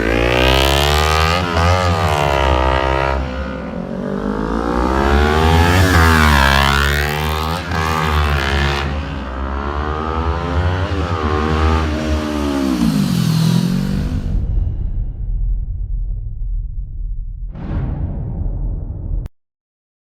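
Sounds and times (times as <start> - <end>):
motorcycle engine revving: 0.0 - 14.4.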